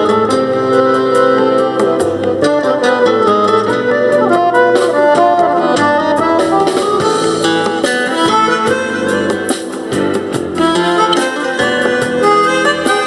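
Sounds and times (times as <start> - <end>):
accordion melody: 0.0 - 13.0
backing track with steady beat: 0.0 - 13.0.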